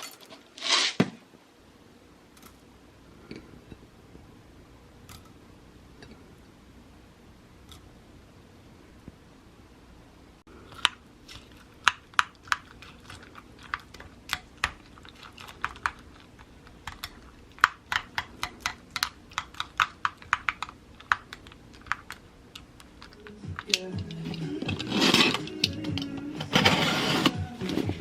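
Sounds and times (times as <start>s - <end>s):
computer keyboard typing: 11.8s - 24.2s.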